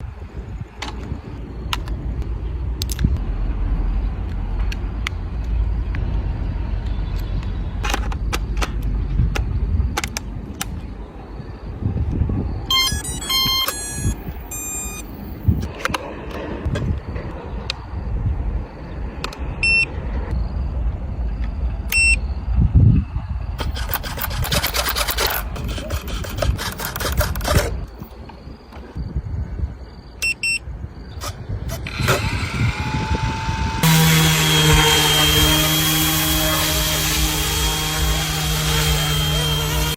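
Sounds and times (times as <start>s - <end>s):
low rumble: 1.4s - 7.8s
short electronic beep: 12.7s - 15.2s, 21.9s - 22.2s
model helicopter rotor rumble: 23.6s - 27.8s
sharp clicks: 23.6s - 28.0s.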